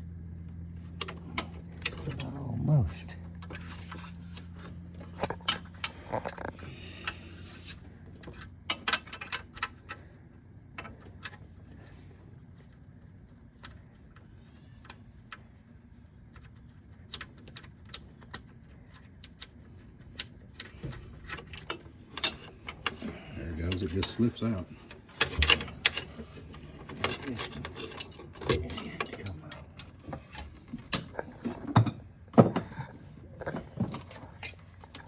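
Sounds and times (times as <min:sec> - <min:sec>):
metallic clicks and rattles: 0:16.3 - 0:35.0.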